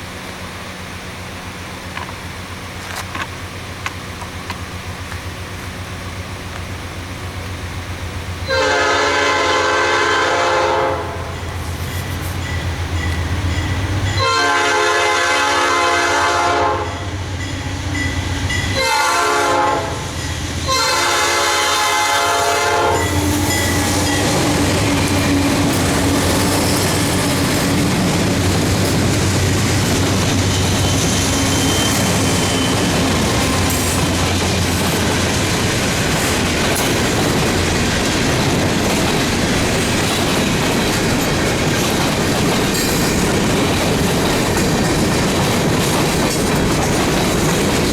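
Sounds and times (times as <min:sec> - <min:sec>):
freight train rumbling past: 0:00.0 - 0:47.9
train wheel clatter: 0:01.8 - 0:09.1, 0:17.1 - 0:47.9
locomotive horn: 0:08.4 - 0:12.3, 0:14.2 - 0:17.2, 0:18.8 - 0:27.7.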